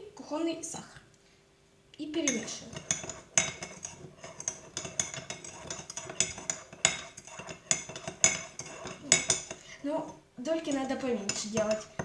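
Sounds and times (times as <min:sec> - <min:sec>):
spoon clinking in a mug: 0:02.3 - 0:09.6.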